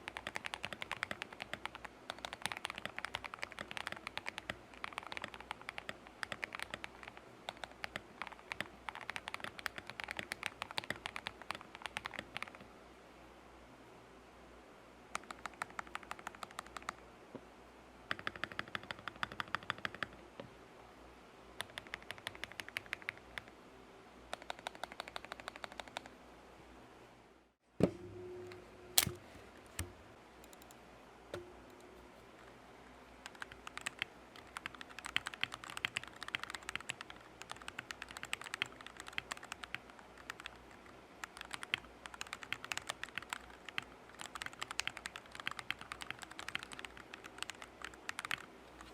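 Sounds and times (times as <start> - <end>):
mechanical keyboard typing: 0.0 - 12.6, 15.2 - 17.0, 18.1 - 20.2, 21.6 - 23.5, 24.3 - 26.1, 29.0 - 30.8, 33.2 - 48.9.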